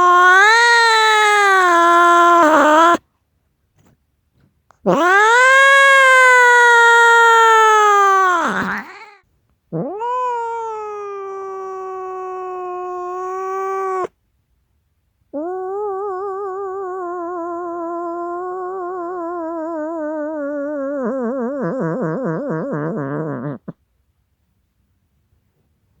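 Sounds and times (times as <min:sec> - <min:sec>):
cat yowling: 0:00.0 - 0:03.0, 0:04.9 - 0:09.2, 0:09.8 - 0:14.1, 0:15.4 - 0:23.8.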